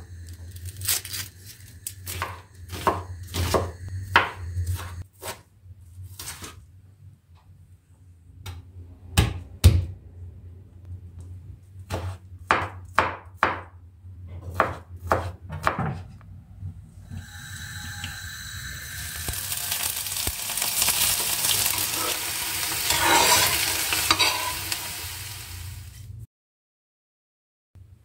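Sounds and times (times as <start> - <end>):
knife chopping on cutting board: 2.1 - 5.4, 11.9 - 13.7, 14.4 - 16.0
food sizzling in a pan: 17.2 - 26.2.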